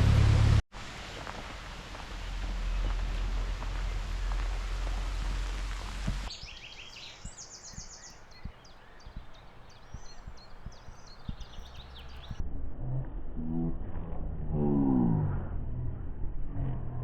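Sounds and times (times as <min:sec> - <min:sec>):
rushing outdoor noise: 0:00.0 - 0:12.4
birdsong: 0:02.0 - 0:12.4.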